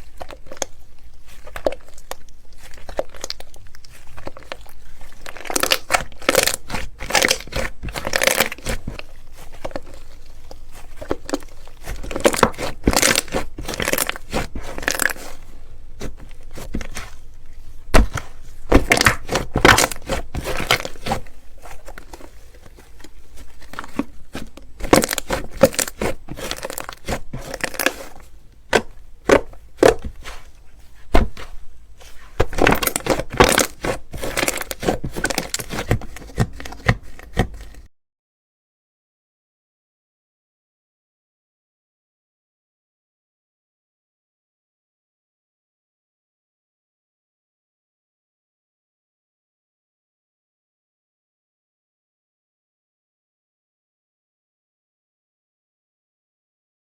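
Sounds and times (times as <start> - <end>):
slime crackling and popping: 0.0 - 15.4.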